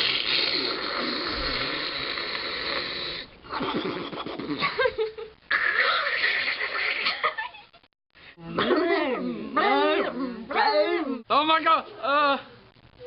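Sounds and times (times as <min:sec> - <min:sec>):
person making silly vocal noises: 0:05.5 - 0:07.2.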